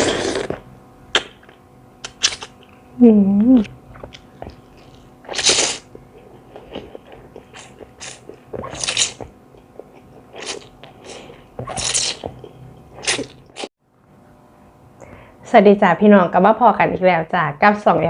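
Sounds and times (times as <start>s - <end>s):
sharp hissing slurps: 0.0s - 0.6s
crunching and chewing food: 3.9s - 13.7s.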